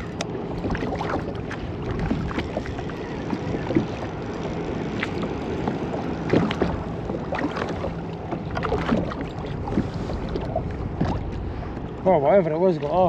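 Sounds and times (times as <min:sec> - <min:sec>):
small knocks and splashes: 0:00.0 - 0:11.9
water lapping against kayak hull: 0:00.0 - 0:13.0
wind noise on microphone: 0:08.6 - 0:12.2.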